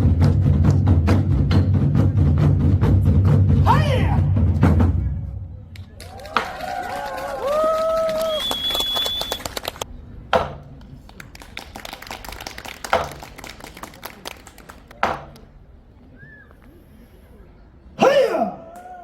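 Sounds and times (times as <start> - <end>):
large barrel drum strikes: 10.4 - 10.8, 12.9 - 13.4, 15.0 - 15.5.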